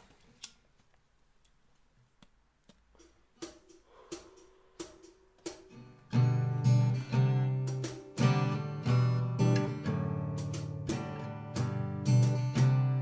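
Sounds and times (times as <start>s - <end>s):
soft guitar clicks: 2.2s - 5.9s, 10.3s - 11.0s
acoustic guitar notes plucked: 3.4s - 13.0s
guitar chord strummed: 6.1s - 13.0s.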